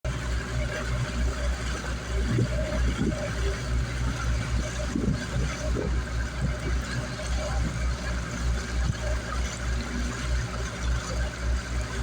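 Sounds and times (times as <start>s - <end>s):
boat engine rumbling: 0.0s - 12.0s.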